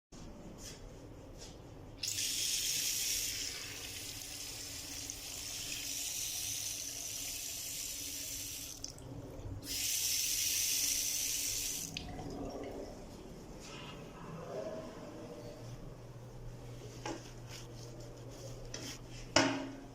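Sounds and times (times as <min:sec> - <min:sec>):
tap water running into basin: 0:02.0 - 0:09.1.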